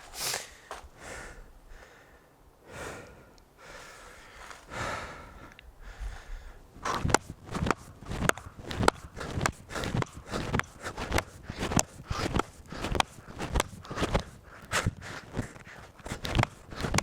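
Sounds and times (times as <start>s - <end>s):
axe chopping wood: 6.8s - 17.0s.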